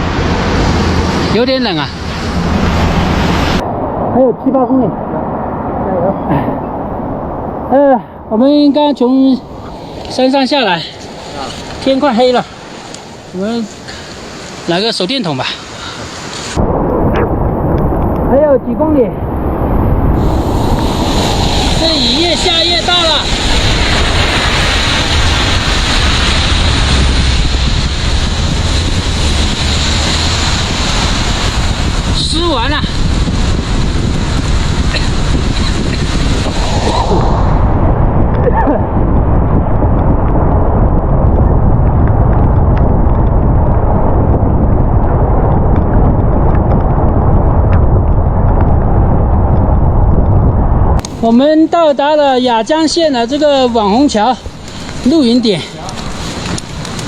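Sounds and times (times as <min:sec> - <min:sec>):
wind buffeting microphone: 0:00.0 - 0:57.0
heavy rain hissing: 0:09.4 - 0:16.6, 0:20.0 - 0:39.0, 0:51.0 - 0:57.0.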